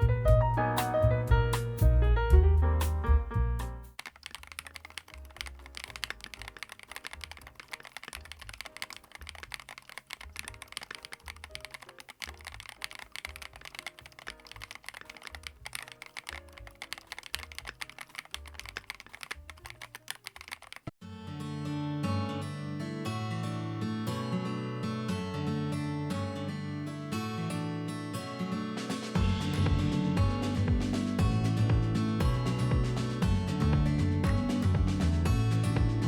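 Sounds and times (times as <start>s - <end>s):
soft music: 0.0s - 4.0s, 28.4s - 36.0s
mechanical keyboard typing: 4.0s - 21.0s.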